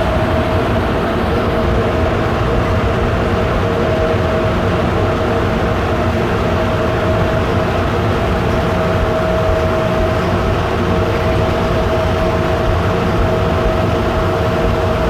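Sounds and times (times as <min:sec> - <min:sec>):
mid-pitched whine: 0:00.0 - 0:15.0
train rumble: 0:00.0 - 0:15.0.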